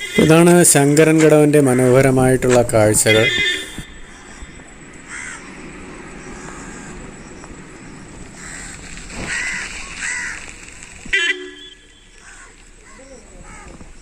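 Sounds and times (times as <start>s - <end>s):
vehicle horn toot: 0.0s - 1.1s, 2.5s - 4.6s, 11.1s - 12.2s
crows cawing: 1.6s - 2.3s, 3.3s - 7.2s, 8.2s - 13.9s.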